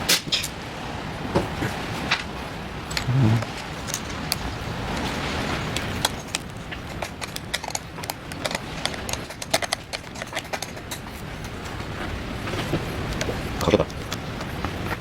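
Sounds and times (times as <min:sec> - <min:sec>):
hand tools clicking on metal: 0:02.9 - 0:05.1, 0:05.7 - 0:11.8.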